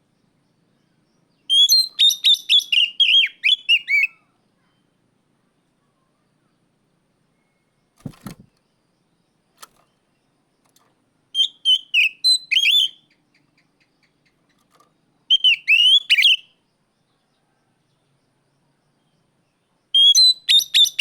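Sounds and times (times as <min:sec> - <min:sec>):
bird whistled calls: 0:01.5 - 0:04.2, 0:11.4 - 0:13.0, 0:15.3 - 0:16.5, 0:20.0 - 0:21.0.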